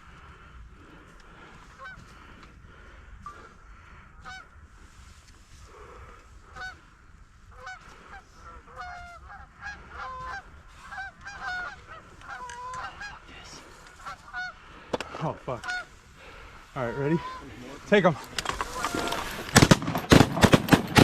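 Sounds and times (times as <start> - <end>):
geese honking: 1.7 - 2.2, 4.2 - 4.5, 6.5 - 6.9, 7.5 - 19.6.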